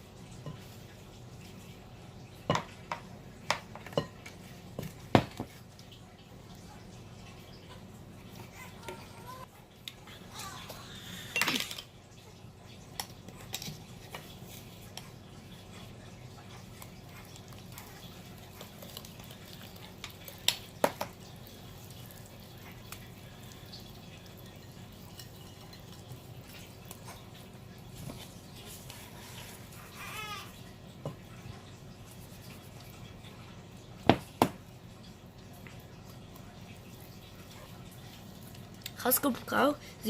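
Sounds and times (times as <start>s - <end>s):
utensil stirring batter in bowl: 12.9s - 30.5s.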